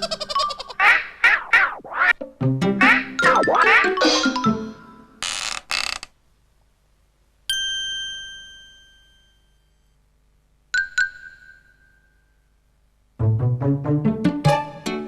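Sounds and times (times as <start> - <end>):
bell-like ding: 7.5 - 9.7.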